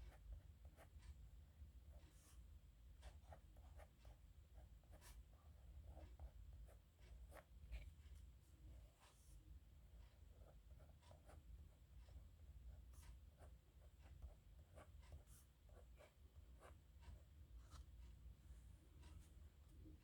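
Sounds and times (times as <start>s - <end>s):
pen scratching on paper: 3.0s - 7.9s, 10.2s - 17.9s.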